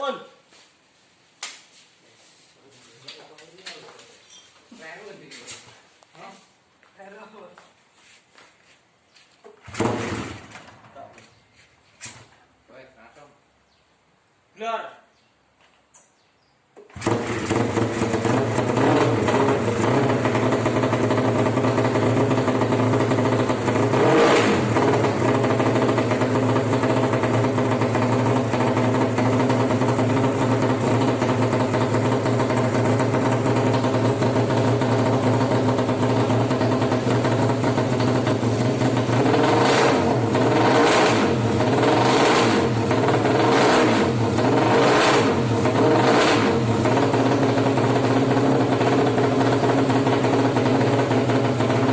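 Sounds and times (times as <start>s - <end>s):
motorcycle engine revving: 9.6s - 10.9s, 16.9s - 51.9s.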